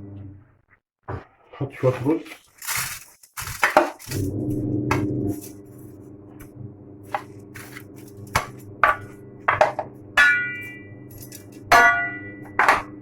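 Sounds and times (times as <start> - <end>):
steady low hum: 4.0 - 13.0
utensil knocking on metal pot: 8.4 - 13.0
ringing clang: 8.9 - 13.0.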